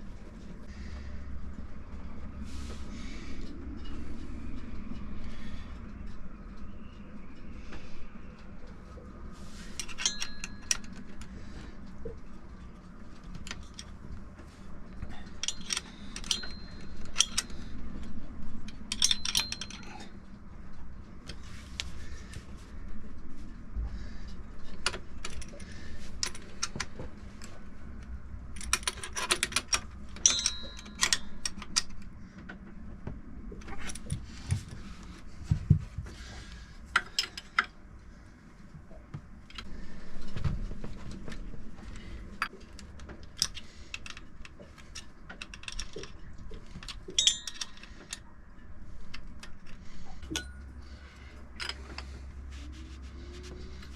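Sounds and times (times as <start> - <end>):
metal tools clinking and rattling: 9.6 - 11.3, 14.9 - 17.8, 18.7 - 20.3, 28.6 - 32.1, 37.0 - 37.8, 41.9 - 48.3, 49.1 - 52.4.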